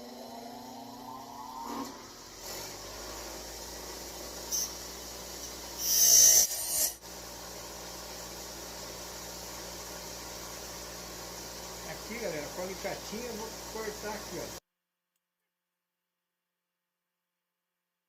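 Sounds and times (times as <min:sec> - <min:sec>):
high-pitched metal grinding: 0:00.0 - 0:03.5
power tool whining: 0:00.0 - 0:07.0.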